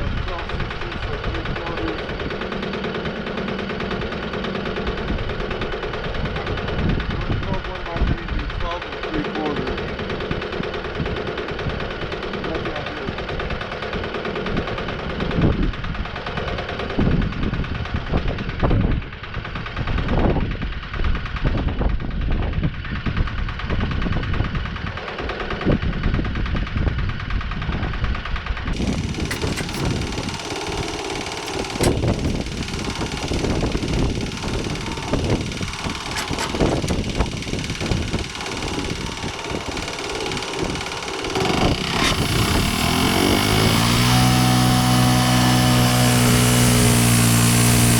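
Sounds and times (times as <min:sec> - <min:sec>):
sawmill engine running: 0:00.0 - 0:15.2, 0:28.8 - 0:47.9.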